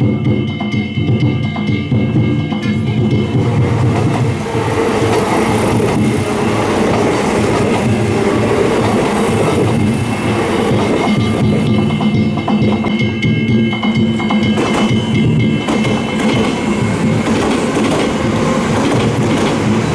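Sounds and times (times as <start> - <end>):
train wheels rumbling on rails: 0.0 - 19.9.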